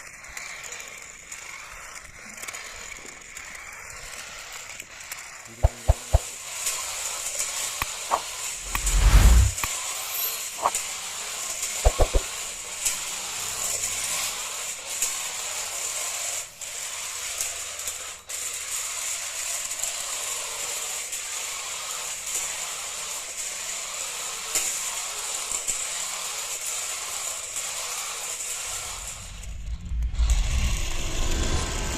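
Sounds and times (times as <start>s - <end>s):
toy truck motor whirring: 0.0s - 31.5s
knocks: 5.6s - 6.3s, 11.9s - 12.2s.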